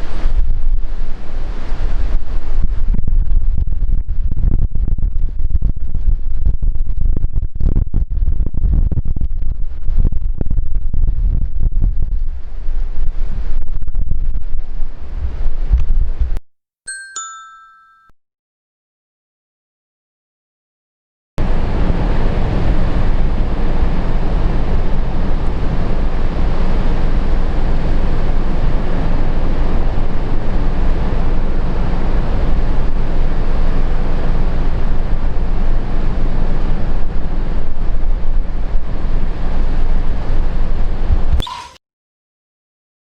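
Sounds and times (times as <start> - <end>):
wind buffeting microphone: 0.0 - 16.4, 21.4 - 41.4
heavy surf breaking: 21.4 - 40.9.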